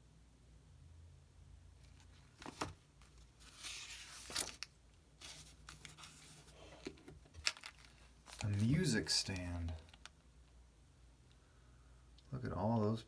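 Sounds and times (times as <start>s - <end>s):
paper pages rustling: 1.9s - 10.1s.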